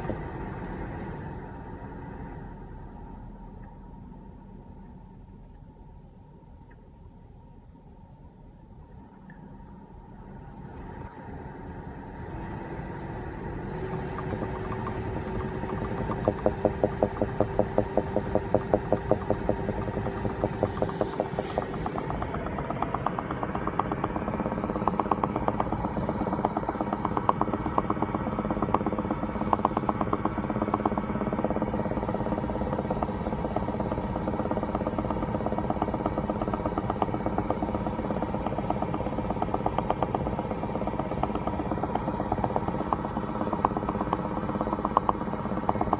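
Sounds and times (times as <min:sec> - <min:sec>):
car running hum: 0:00.0 - 0:05.6, 0:09.2 - 0:45.9
rapid bubbling popping noise: 0:13.6 - 0:45.9.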